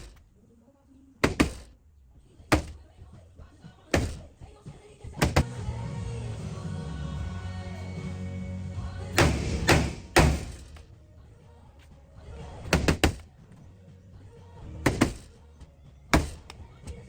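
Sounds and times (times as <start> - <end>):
tool knocking on metal panel: 1.2 - 1.7, 5.2 - 5.5, 12.7 - 13.2.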